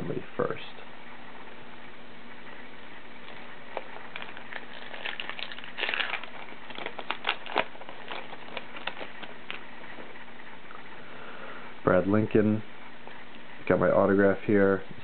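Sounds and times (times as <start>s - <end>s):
faint steady hum: 0.0s - 15.0s
foil wrapper crinkling: 3.2s - 9.7s.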